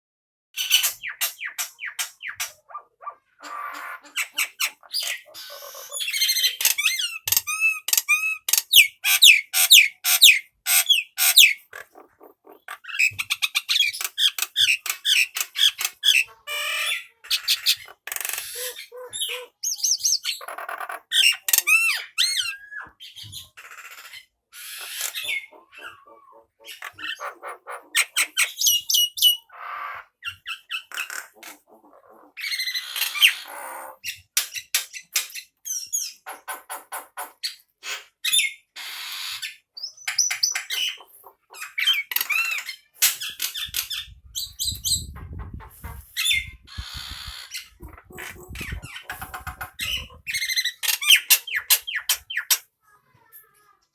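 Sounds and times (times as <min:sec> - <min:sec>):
myna calling and singing: 0:00.8 - 0:10.0, 0:10.8 - 0:23.6, 0:24.8 - 0:34.3, 0:43.4 - 0:52.6.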